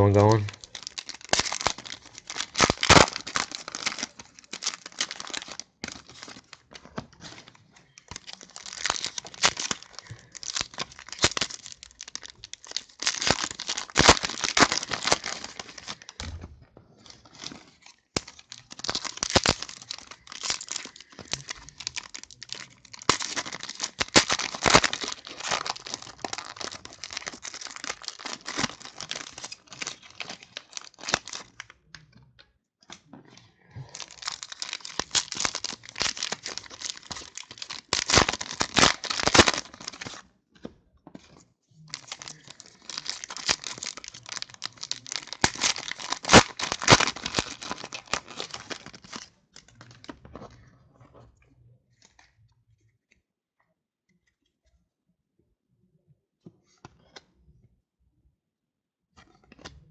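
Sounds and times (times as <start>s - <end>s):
plastic wrapper tearing and crinkling: 0.0s - 16.2s, 17.0s - 32.1s, 33.4s - 40.2s, 41.2s - 50.7s.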